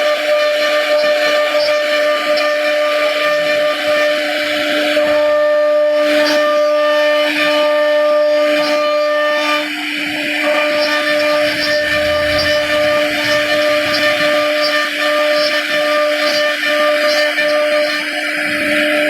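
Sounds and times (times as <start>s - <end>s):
router spindle whine: 0.0s - 19.0s
bit grinding into wood: 10.2s - 18.0s.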